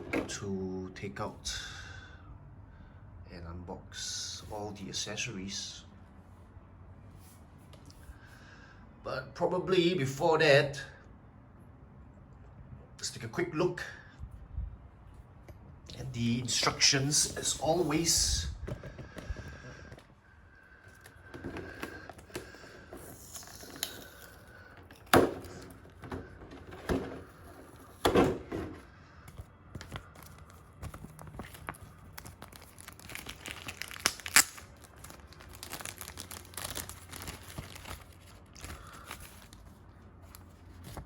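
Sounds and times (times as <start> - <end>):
packaging crinkling and rustling: 29.8 - 41.0.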